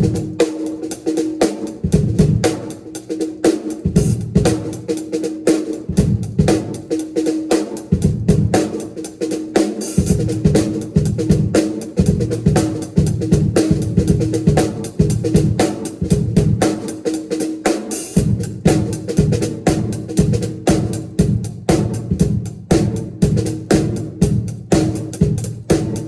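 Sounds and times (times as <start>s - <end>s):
drum kit playing fast: 0.0s - 26.0s.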